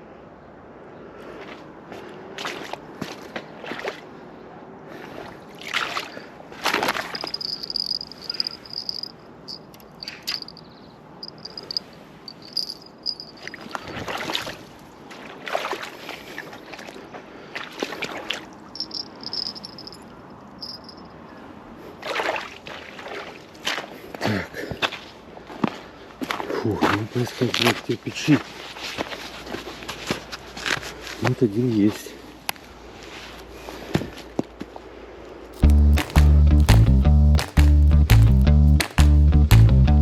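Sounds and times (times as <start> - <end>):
digging in damp earth: 5.8 - 10.6, 35.6 - 39.2.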